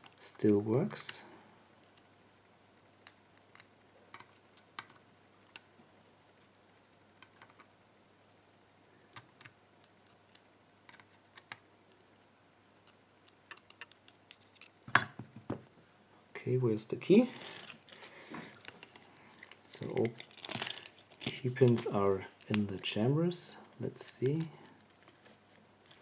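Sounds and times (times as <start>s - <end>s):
clicks of lock parts and tools: 3.0s - 5.7s, 12.8s - 15.2s.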